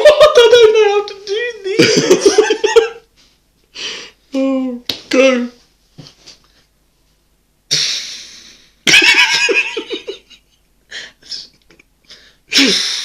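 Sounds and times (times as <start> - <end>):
mouth hiss of air: 7.7 - 8.8.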